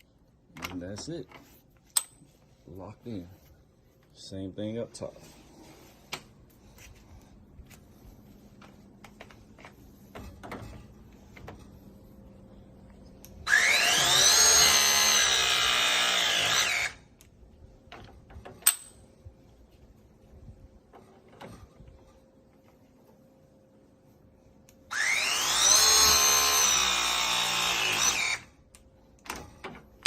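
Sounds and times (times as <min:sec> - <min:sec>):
press tool motor whine: 0:13.4 - 0:17.0, 0:24.9 - 0:28.5.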